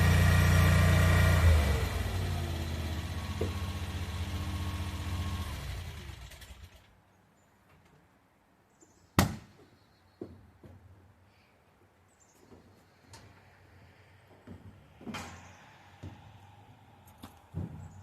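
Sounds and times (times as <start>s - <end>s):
skid steer engine running: 0.0s - 7.0s.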